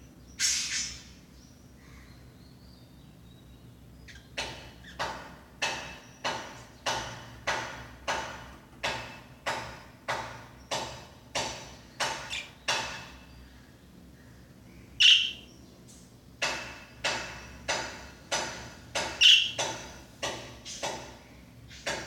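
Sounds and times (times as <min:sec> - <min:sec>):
budgie chirping: 0:12.0 - 0:12.9, 0:14.9 - 0:15.6, 0:19.1 - 0:19.7.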